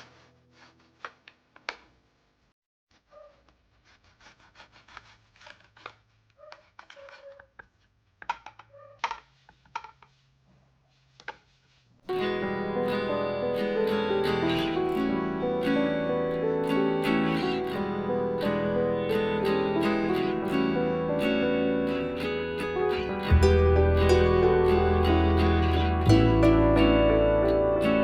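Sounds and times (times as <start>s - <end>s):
small objects clicking and tapping: 6.5s - 10.1s
plucked guitar music: 12.1s - 28.0s.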